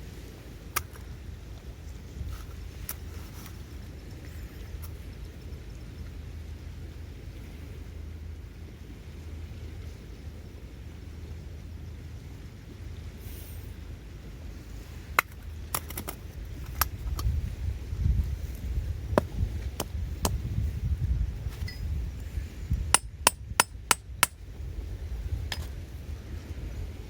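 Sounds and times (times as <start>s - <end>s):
hammer tapping on metal: 23.0s - 24.4s.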